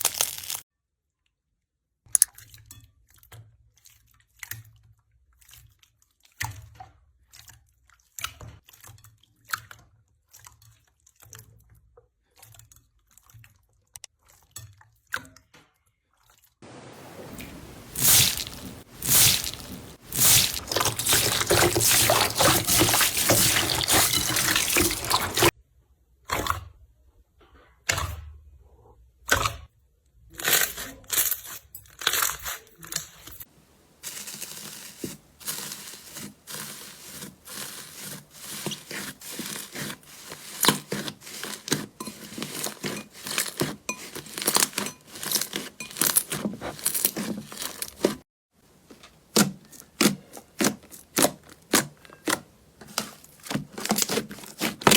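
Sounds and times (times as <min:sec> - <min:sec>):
slime squelching and popping: 0:00.0 - 0:00.6, 0:17.3 - 0:25.5, 0:49.0 - 0:54.9.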